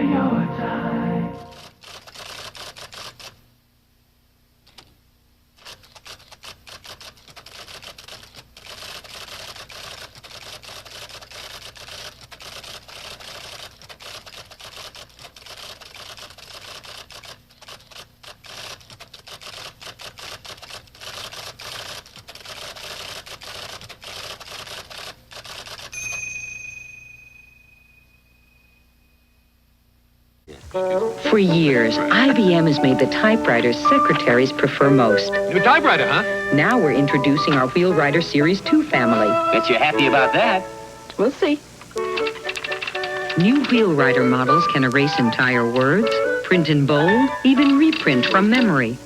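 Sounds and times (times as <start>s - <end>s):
typewriter keys clattering: 1.7s - 3.3s, 5.6s - 26.0s, 31.4s - 40.5s, 42.0s - 49.0s
typewriter bell ringing: 25.9s - 28.9s, 36.6s - 40.4s, 42.0s - 49.0s.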